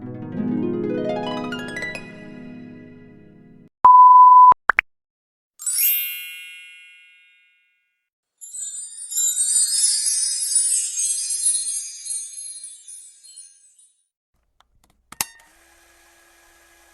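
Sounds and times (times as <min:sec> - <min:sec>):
censor bleep: 0:03.8 - 0:04.6
high glittery jingle: 0:05.6 - 0:07.3, 0:08.4 - 0:14.1.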